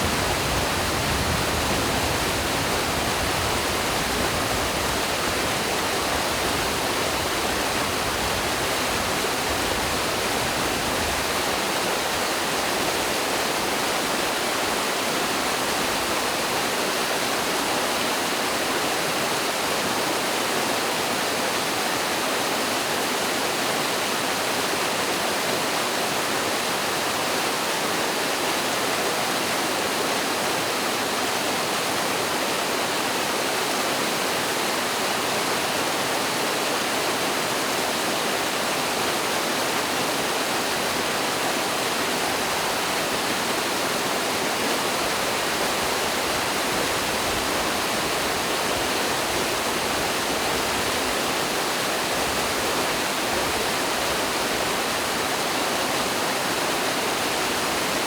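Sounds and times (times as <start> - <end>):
stream pouring over waterfall: 0.0 - 58.0.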